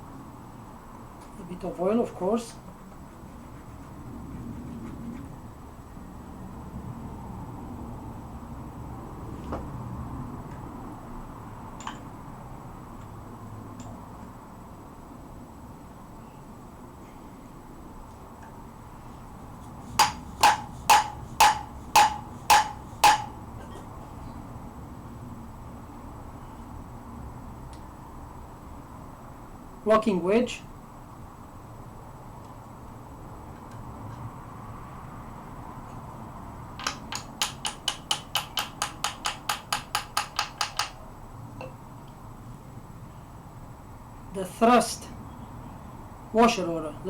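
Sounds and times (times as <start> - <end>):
hammer blows on metal: 19.8 - 23.5
hammer striking metal: 20.0 - 23.4, 36.8 - 41.0.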